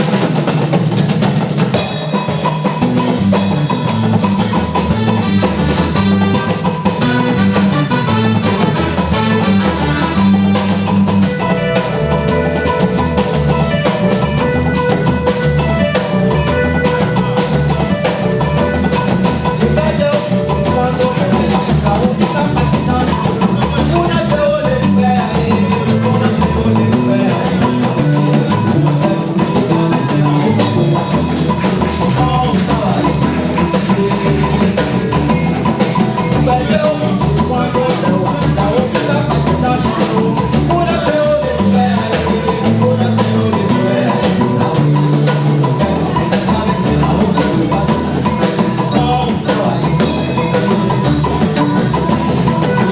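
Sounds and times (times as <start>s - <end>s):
instrumental music with fast drums: 0.0s - 52.9s.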